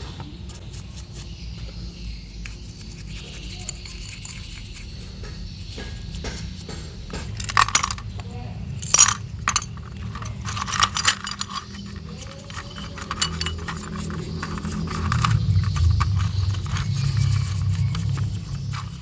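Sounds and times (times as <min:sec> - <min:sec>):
low steady hum: 0:00.0 - 0:19.0
small metal parts clinking: 0:02.5 - 0:19.0.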